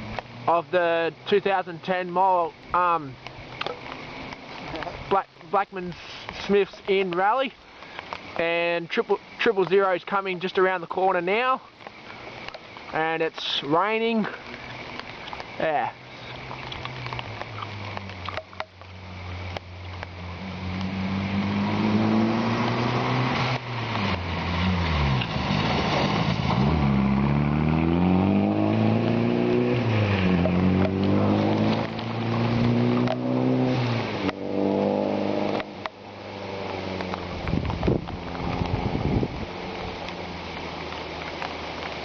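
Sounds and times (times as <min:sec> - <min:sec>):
rain: 0:00.0 - 0:42.0
hiss of wet tyres: 0:05.7 - 0:06.7, 0:07.6 - 0:08.4, 0:14.2 - 0:18.2, 0:18.8 - 0:42.0
rally car engine revving: 0:20.0 - 0:40.4.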